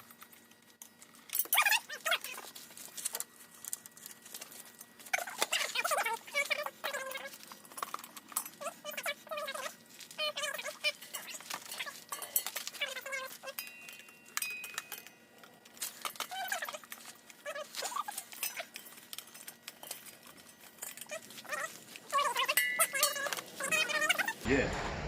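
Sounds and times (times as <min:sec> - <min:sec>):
dog whining: 0:05.1 - 0:14.0, 0:15.8 - 0:24.4.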